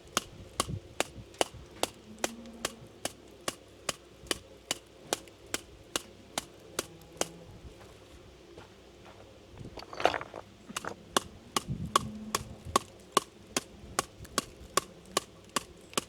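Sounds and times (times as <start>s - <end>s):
brush striking mortar joints: 9.6s - 13.7s.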